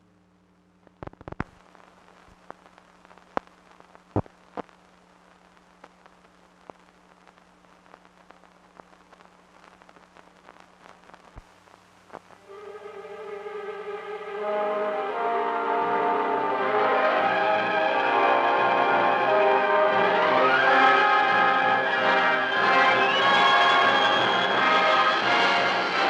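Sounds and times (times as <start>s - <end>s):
crackles and pops: 0.0s - 12.5s, 20.1s - 26.0s
film soundtrack hiss: 0.0s - 26.0s.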